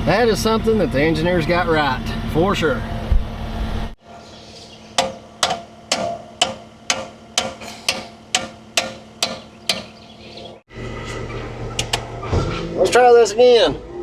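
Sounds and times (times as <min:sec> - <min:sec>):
hammer striking metal bracket: 0:04.2 - 0:10.0.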